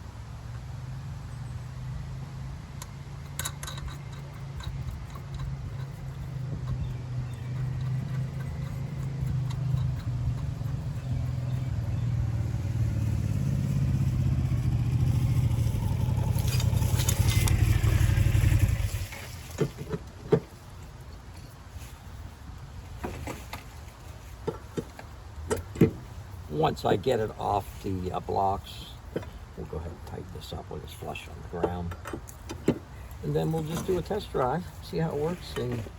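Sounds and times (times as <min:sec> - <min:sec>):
motor humming: 0:02.6 - 0:19.2
sharp knocks and clicks: 0:02.8 - 0:12.4, 0:31.6 - 0:32.9.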